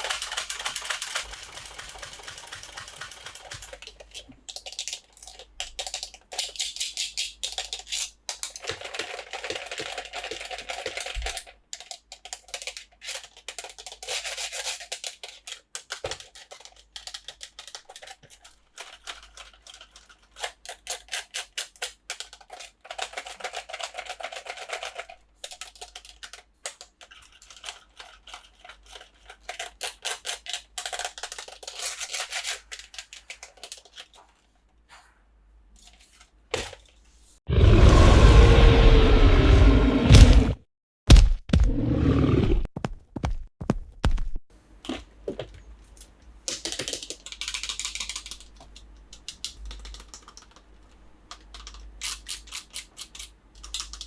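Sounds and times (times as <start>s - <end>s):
plastic packaging rubbing and clicking: 0.0s - 34.8s, 46.5s - 54.0s.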